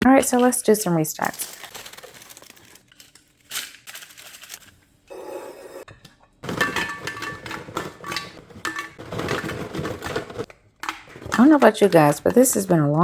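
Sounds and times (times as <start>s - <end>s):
hard containers clinking: 5.9s - 13.0s.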